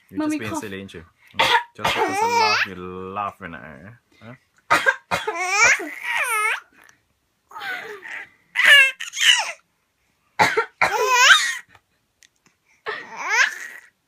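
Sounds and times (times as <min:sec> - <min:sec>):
woman coughing: 0:01.4 - 0:02.6, 0:04.7 - 0:05.8, 0:10.4 - 0:11.2
baby squealing laughter: 0:02.0 - 0:02.7, 0:07.5 - 0:09.6, 0:11.0 - 0:11.6, 0:13.1 - 0:13.9.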